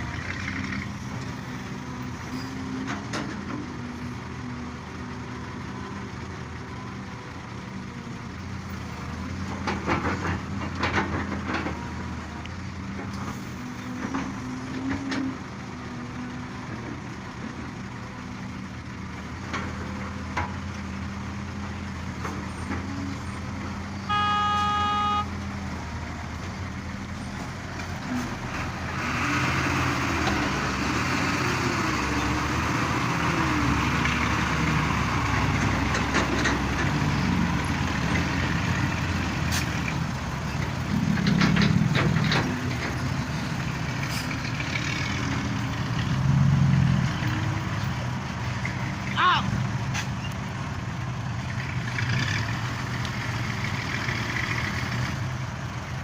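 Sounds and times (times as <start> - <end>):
heavy diesel machinery running: 0.0 - 56.0
horn: 24.1 - 25.3.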